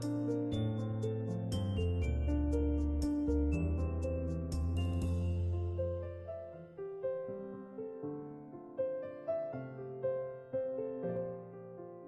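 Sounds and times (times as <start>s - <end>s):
soft new-age instrumental music: 0.0s - 6.6s.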